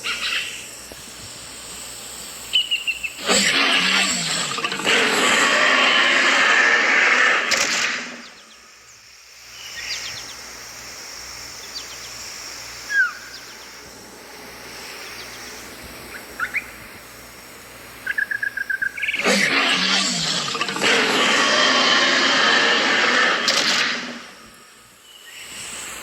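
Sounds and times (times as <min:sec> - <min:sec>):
outdoor ambience: 0:00.0 - 0:26.0
loud noise: 0:03.2 - 0:08.8, 0:19.2 - 0:25.0
short bird chirps: 0:12.9 - 0:13.7.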